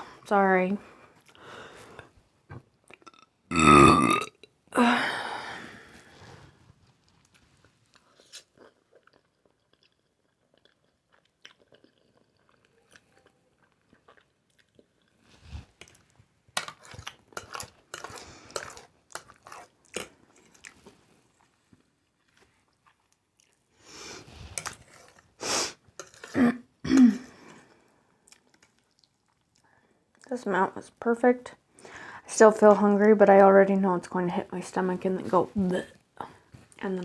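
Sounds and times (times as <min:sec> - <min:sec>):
person chewing with wet mouth smacks: 0:07.2 - 0:15.2, 0:15.8 - 0:23.7, 0:28.3 - 0:29.7.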